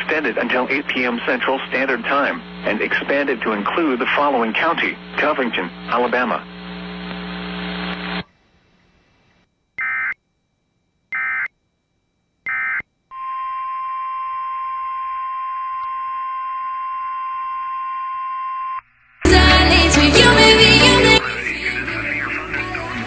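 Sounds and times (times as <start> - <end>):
radio hiss: 0.0 - 8.2.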